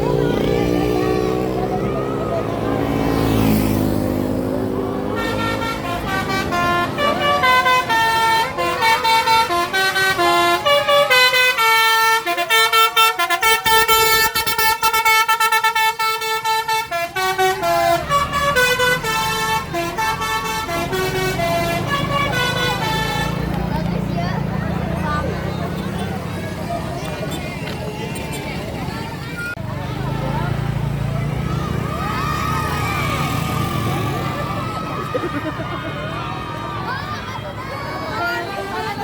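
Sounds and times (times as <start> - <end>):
vehicle passing: 0.0 - 39.0
musical air horn melody: 5.0 - 23.6.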